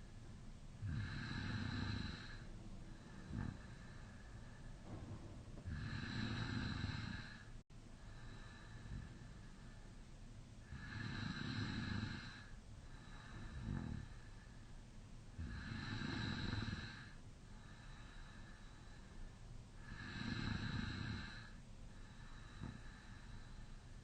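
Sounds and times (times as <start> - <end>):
quiet breathing: 0.0 - 24.0
man snoring loudly: 0.8 - 2.4, 5.7 - 7.5, 10.7 - 12.5, 15.4 - 17.2, 19.8 - 21.6.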